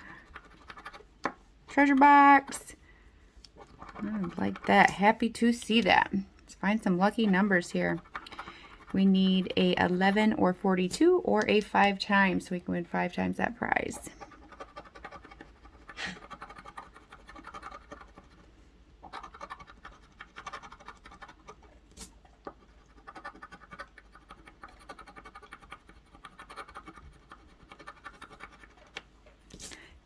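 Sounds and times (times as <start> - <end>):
scratching lottery ticket: 0.0 - 1.1, 3.5 - 6.1, 6.7 - 10.4, 13.6 - 21.8, 22.4 - 29.2.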